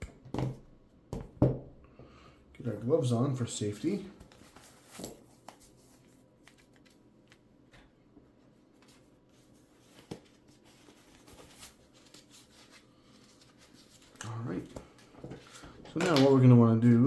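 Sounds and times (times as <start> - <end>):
rustling of disposable gloves: 3.6 - 17.0.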